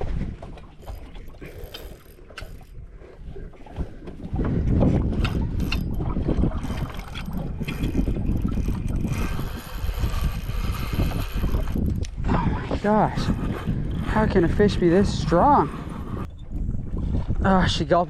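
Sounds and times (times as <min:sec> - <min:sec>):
rod handling noise: 0:00.6 - 0:02.8
fishing reel clicking: 0:00.8 - 0:02.8, 0:06.8 - 0:12.2.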